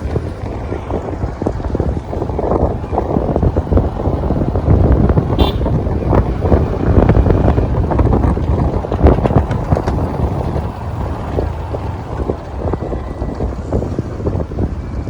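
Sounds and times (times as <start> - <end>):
road traffic: 0.0 - 15.0
wind noise on microphone: 0.0 - 15.0
vehicle horn toot: 5.3 - 5.8.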